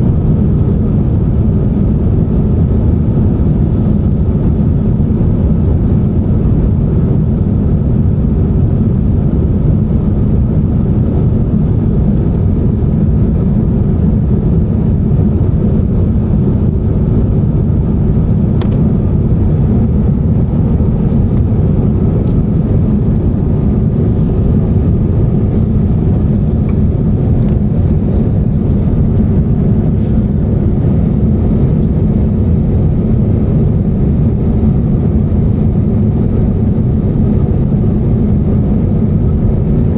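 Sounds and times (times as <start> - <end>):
aircraft engines rumbling: 0.0 - 39.9
rushing air: 10.6 - 39.9.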